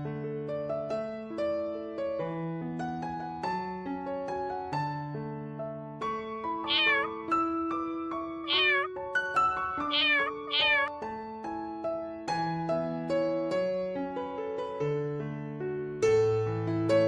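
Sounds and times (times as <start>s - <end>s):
gentle piano music: 0.0s - 17.0s
young animal crying: 6.7s - 7.2s, 8.5s - 8.9s, 9.7s - 10.9s.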